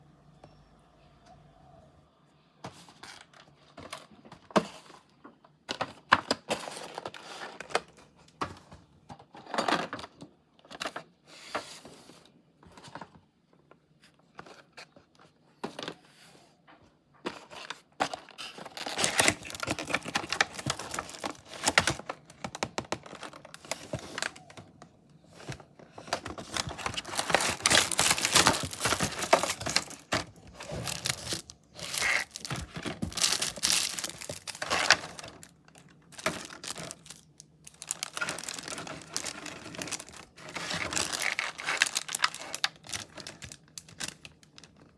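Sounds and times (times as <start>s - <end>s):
packaging rustling: 17.5s - 44.9s
packaging crinkling and tearing: 18.1s - 24.8s, 25.4s - 44.9s
packaging clicks: 18.1s - 44.9s.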